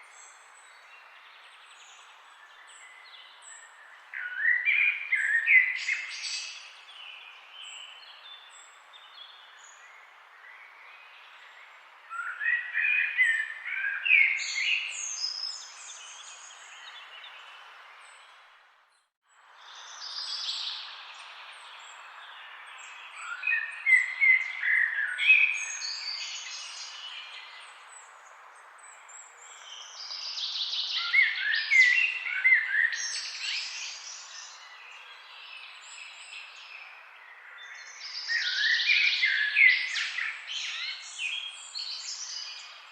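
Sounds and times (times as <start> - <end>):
songbirds warbling: 19.6 - 42.9.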